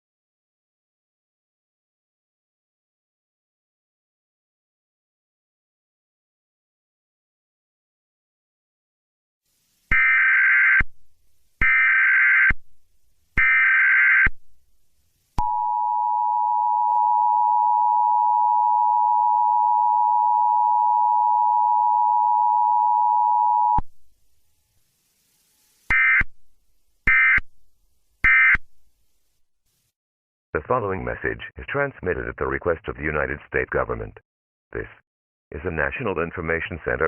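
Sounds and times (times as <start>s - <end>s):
short data bursts: 9.9s - 10.9s, 11.6s - 12.6s, 13.4s - 14.4s, 25.9s - 26.3s, 27.1s - 27.5s, 28.2s - 28.6s
two-tone attention signal: 15.4s - 23.8s.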